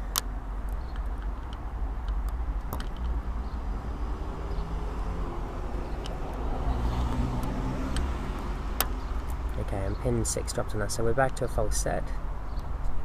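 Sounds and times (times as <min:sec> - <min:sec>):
road traffic rumble: 0:00.0 - 0:13.0
lock picks clicking: 0:00.1 - 0:03.2
passing vehicle engine hum: 0:03.0 - 0:10.0.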